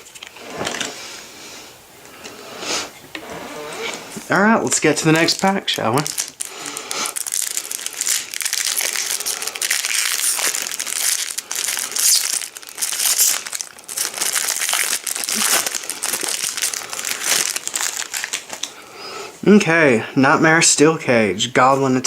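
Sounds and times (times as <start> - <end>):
wrapper crinkling: 3.9 - 18.8.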